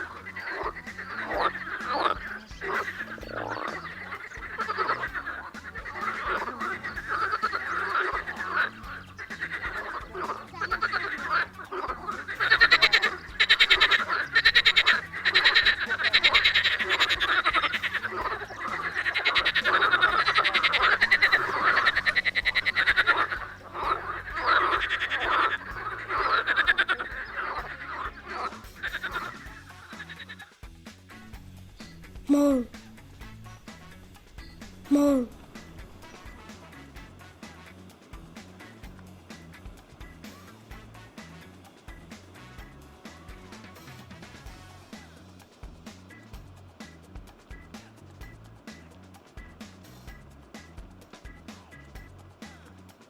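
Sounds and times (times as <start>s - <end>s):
frogs croaking in chorus: 0.0s - 30.6s.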